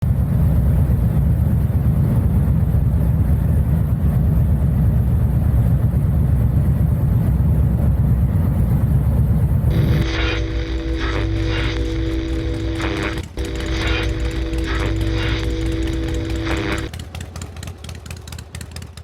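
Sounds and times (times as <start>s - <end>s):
motorcycle engine rumbling: 9.7s - 19.0s.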